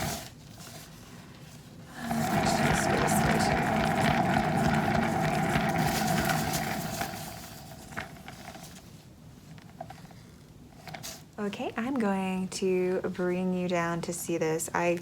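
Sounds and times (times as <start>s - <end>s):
small electric motor spinning: 2.0s - 8.7s.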